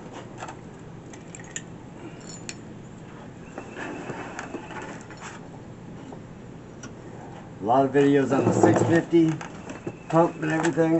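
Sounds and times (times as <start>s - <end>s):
metal tools clinking: 1.3s - 2.6s.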